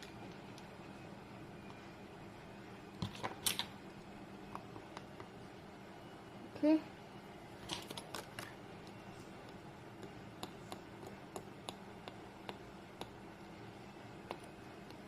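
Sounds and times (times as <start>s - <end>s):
crafting tools clicking and tapping: 7.7s - 13.2s.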